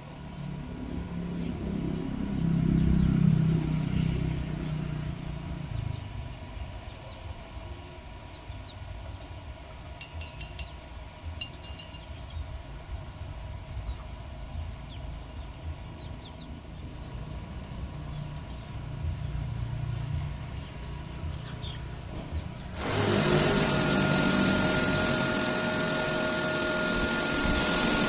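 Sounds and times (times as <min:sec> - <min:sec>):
low rumble: 0:12.2 - 0:28.0.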